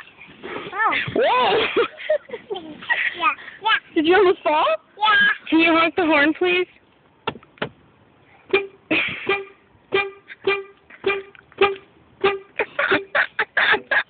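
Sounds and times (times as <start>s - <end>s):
toy horn honking: 8.5s - 13.1s.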